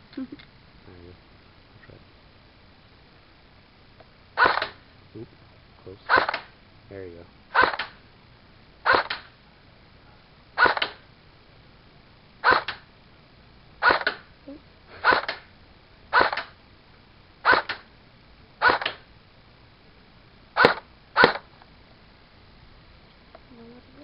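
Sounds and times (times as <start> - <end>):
airsoft rifle shots: 4.4 - 4.8, 6.1 - 6.6, 7.5 - 8.0, 8.8 - 9.4, 10.6 - 11.0, 12.4 - 12.9, 13.8 - 14.3, 14.9 - 15.5, 16.1 - 16.6, 17.4 - 17.9, 18.6 - 19.1, 20.6 - 21.5.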